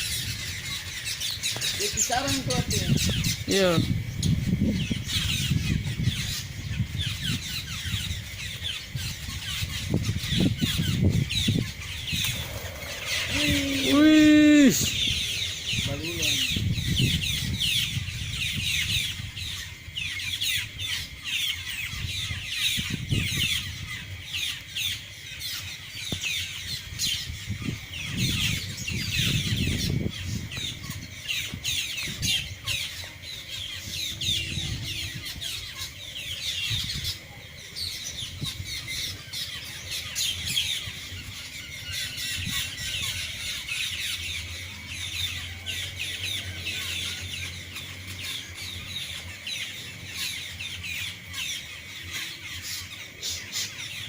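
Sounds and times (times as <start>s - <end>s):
flock of birds calling: 0.0s - 54.0s.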